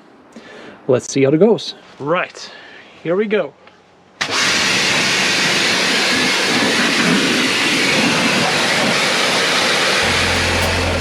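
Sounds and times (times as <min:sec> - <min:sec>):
pressure washer spray hissing: 0:04.4 - 0:11.0.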